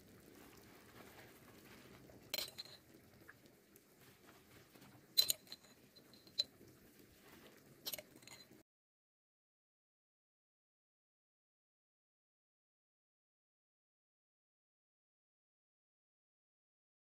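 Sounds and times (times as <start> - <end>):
faint low background hiss: 0.0 - 8.6
kitchenware clinking: 2.2 - 2.9, 4.8 - 6.6, 7.8 - 8.6.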